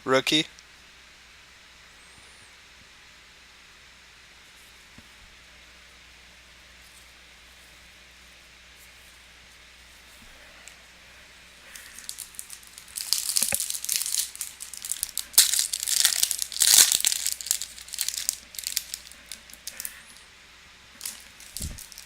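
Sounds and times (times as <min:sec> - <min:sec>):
foil wrapper tearing and crinkling: 0:11.7 - 0:20.1, 0:21.0 - 0:22.0.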